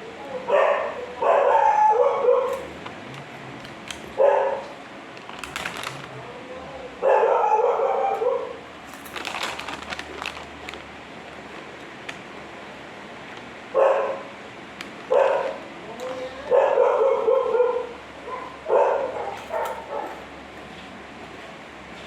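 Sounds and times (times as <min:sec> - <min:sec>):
dog barking: 0:00.3 - 0:02.7, 0:04.2 - 0:04.7, 0:07.0 - 0:08.6, 0:13.7 - 0:14.3, 0:15.1 - 0:15.6, 0:16.4 - 0:20.3.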